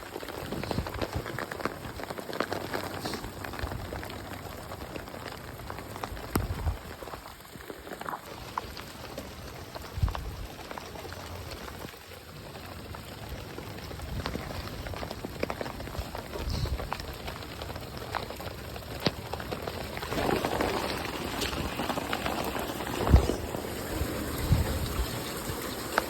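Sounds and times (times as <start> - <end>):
heavy rain falling: 0.0 - 26.0
raindrops tapping close by: 0.0 - 26.0.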